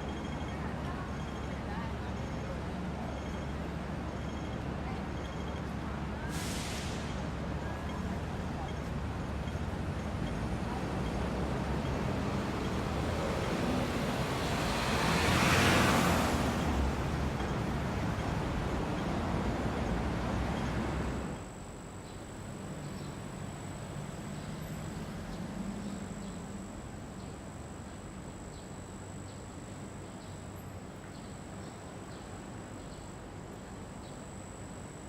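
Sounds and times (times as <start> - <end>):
street traffic noise: 0.0 - 35.0
vehicle passing close: 14.1 - 17.4.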